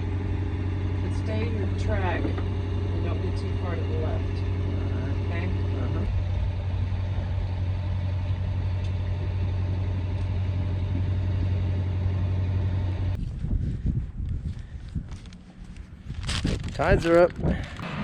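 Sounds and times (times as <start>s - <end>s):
boat engine droning: 0.0s - 13.2s, 17.8s - 18.0s
uneven low rumbling: 0.0s - 18.0s.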